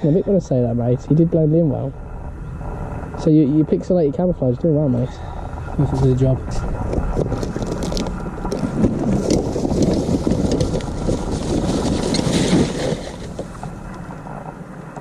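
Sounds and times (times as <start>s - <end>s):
wind rumbling on microphone: 0.0s - 15.0s
hand trolley rattling and squeaking: 7.0s - 14.5s.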